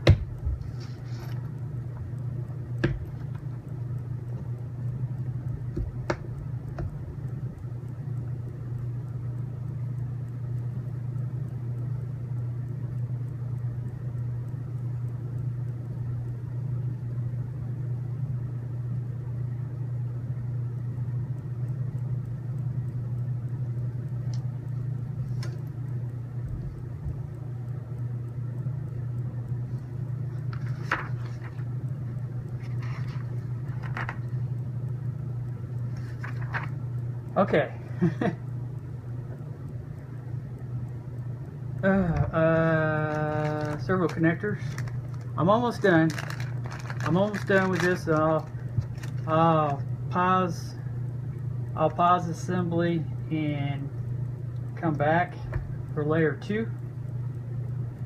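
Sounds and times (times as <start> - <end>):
steady low hum: 0.0 - 58.0
small parts clicking and tapping: 42.1 - 49.3.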